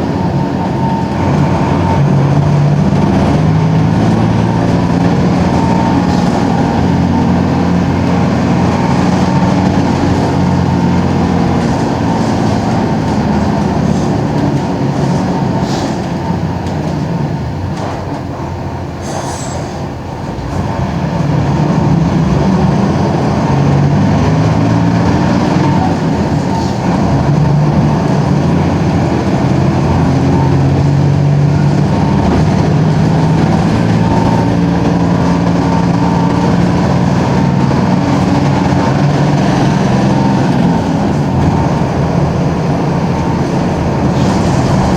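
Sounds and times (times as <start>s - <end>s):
diesel bus engine running: 0.0s - 44.9s
short air hiss: 19.0s - 19.8s.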